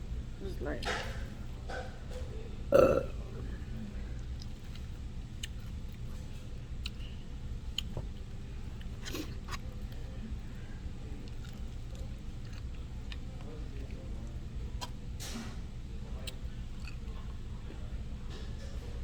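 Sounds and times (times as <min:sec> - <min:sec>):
steady low hum: 0:00.0 - 0:19.0
person chewing food: 0:04.2 - 0:07.1, 0:07.7 - 0:08.2, 0:11.2 - 0:13.9, 0:16.2 - 0:17.3.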